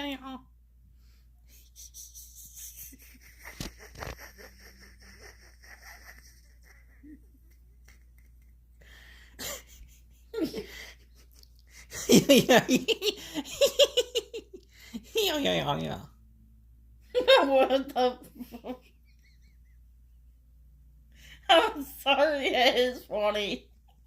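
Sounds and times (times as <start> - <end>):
person laughing: 1.6 - 8.7, 9.4 - 14.6.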